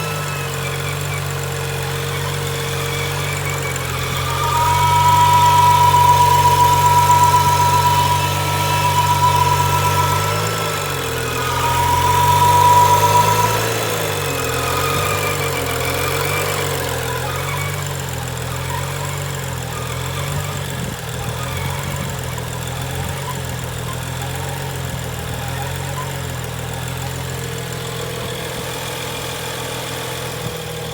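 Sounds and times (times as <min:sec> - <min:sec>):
car engine idling rough: 0:00.0 - 0:30.9
high steady whine: 0:02.6 - 0:17.5.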